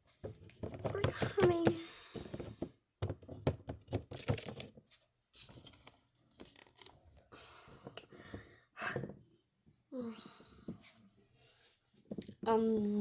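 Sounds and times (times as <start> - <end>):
plastic figures clicking and tapping: 0.3 - 4.8.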